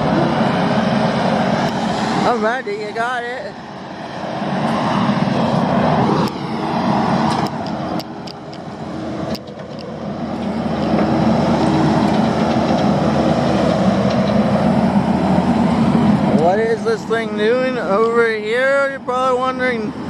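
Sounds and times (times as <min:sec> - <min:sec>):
heavy diesel engine running: 0:00.0 - 0:20.0.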